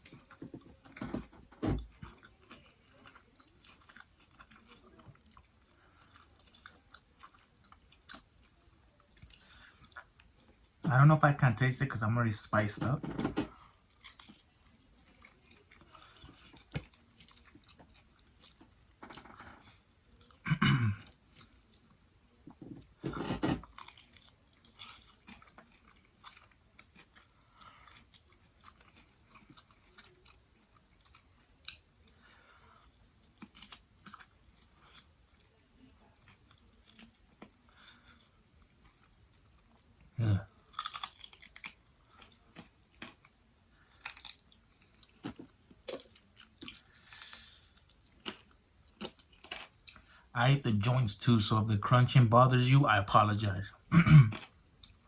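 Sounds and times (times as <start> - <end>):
chewing and crunching food: 0.0 - 51.0, 51.9 - 55.0.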